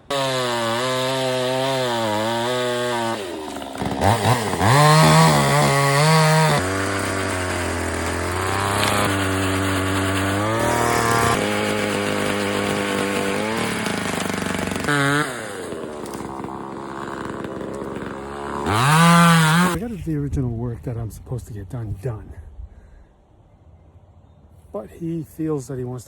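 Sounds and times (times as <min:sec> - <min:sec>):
chainsaw revving: 0:00.0 - 0:19.8.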